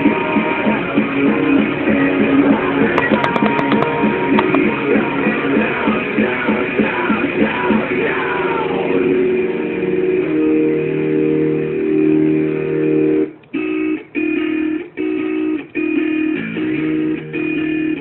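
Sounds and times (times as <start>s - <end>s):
person singing: 0.0s - 9.6s
rock music with electric guitar: 0.0s - 18.0s.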